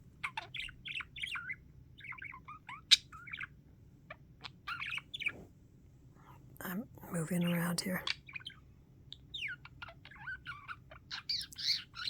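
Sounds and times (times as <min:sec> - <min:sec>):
budgie chirping and warbling: 0:00.2 - 0:03.6, 0:04.4 - 0:05.4, 0:07.4 - 0:12.0.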